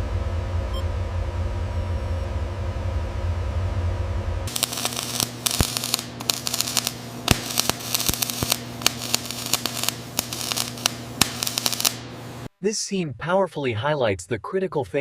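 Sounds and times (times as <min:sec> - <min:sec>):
low hum: 0:00.0 - 0:12.5
sharp pops: 0:04.5 - 0:12.2
arc welding crackling: 0:04.5 - 0:12.5.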